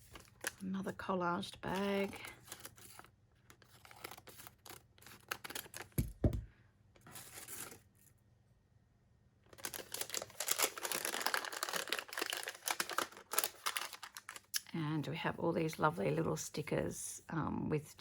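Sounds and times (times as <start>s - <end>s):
plastic packet crinkling: 1.6s - 6.2s, 9.5s - 14.6s.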